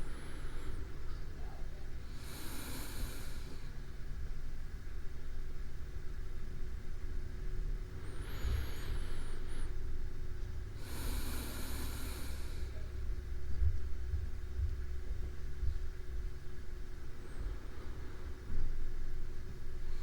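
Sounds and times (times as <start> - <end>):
person breathing slowly: 0.0 - 1.1, 2.0 - 3.8, 8.0 - 10.0, 10.8 - 13.0, 17.2 - 18.7
steady low rumble: 0.0 - 20.0.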